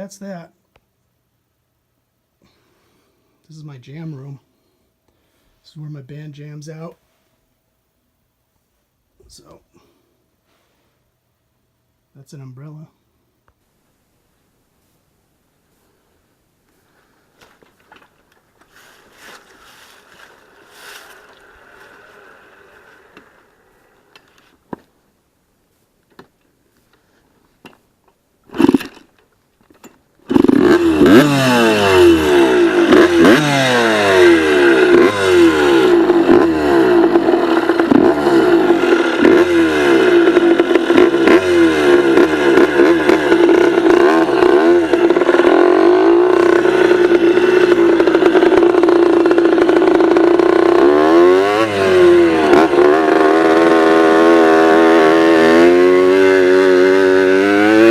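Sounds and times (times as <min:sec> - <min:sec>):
dirt bike engine revving: 0:18.7 - 0:24.6, 0:28.5 - 0:29.1, 0:30.2 - 0:57.9.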